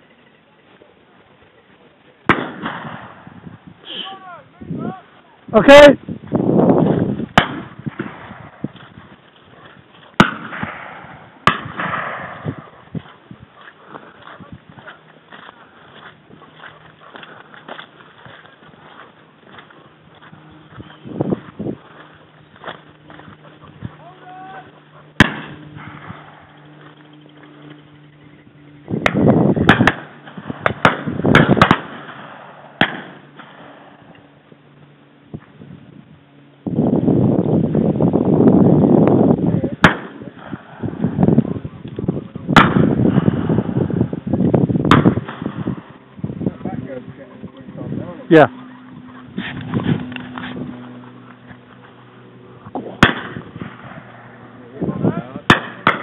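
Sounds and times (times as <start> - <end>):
rushing noise near microphone: 0.0 - 56.0
shotgun shots with echo: 2.3 - 3.3, 7.4 - 8.6, 10.2 - 12.8, 25.2 - 26.5, 29.0 - 34.0, 39.8 - 40.8, 42.6 - 43.6, 44.9 - 45.8, 52.9 - 54.3, 55.4 - 56.0.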